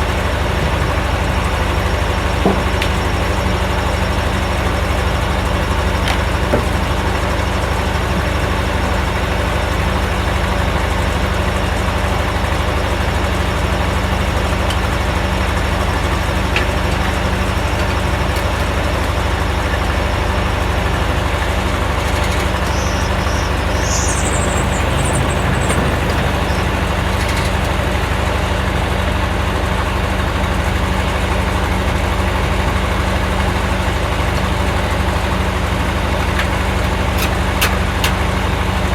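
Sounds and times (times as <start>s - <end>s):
sawmill engine running steadily: 0.0s - 38.9s
high-pitched chirping: 21.8s - 27.1s.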